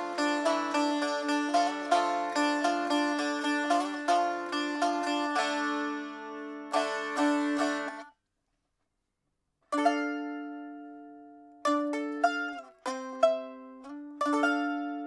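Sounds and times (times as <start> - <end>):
lute picked melody: 0.0 - 8.1, 9.7 - 15.0
strummed lute chord: 0.0 - 8.1.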